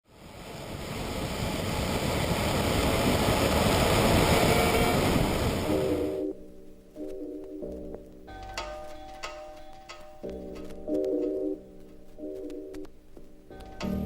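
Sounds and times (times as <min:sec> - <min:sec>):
skateboard wheels rolling on pavement: 0:00.1 - 0:06.3.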